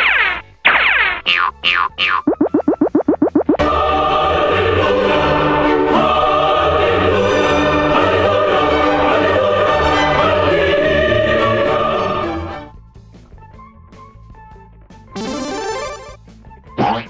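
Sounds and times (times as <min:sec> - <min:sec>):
choir singing held notes: 0:03.6 - 0:12.7
dramatic orchestral music: 0:03.6 - 0:12.7.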